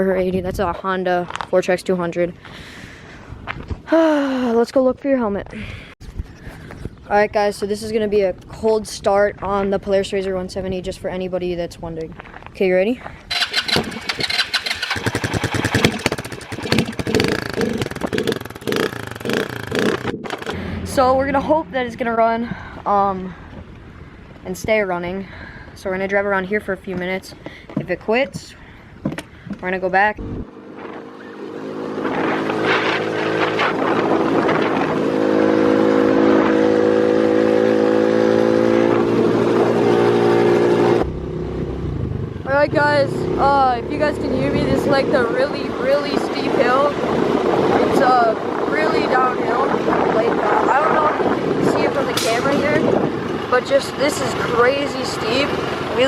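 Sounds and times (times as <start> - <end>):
small engine running under throttle: 13.3 - 20.9
small engine revving: 13.3 - 21.0, 30.2 - 56.0.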